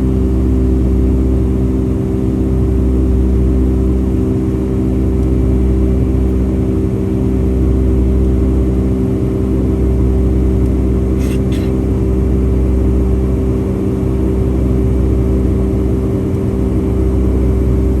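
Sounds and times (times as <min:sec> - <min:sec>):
jet engine drone in cabin: 0:00.0 - 0:18.0.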